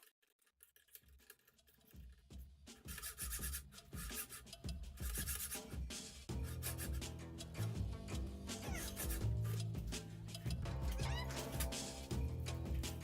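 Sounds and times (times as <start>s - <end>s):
background music: 2.8s - 13.0s.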